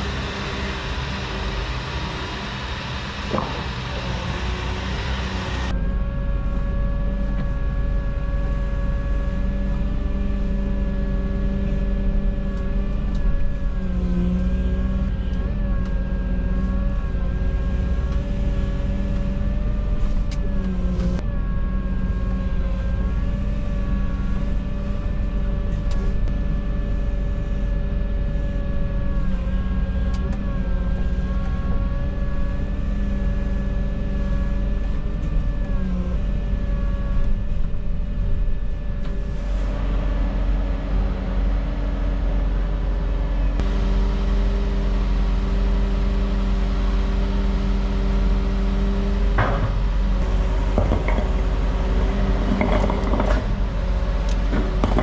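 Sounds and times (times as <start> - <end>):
excavator diesel engine running: 0.0 - 55.0
sharp knocks and clatters: 50.7 - 51.5, 52.4 - 53.6, 54.5 - 55.0.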